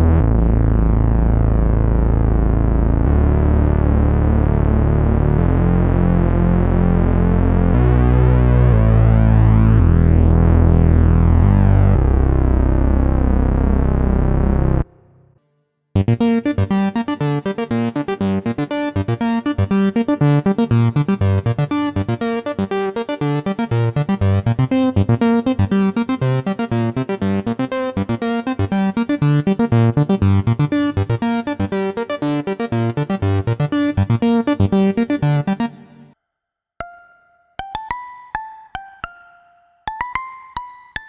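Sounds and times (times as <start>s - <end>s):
synthesizer arpeggio: 16.0s - 36.2s.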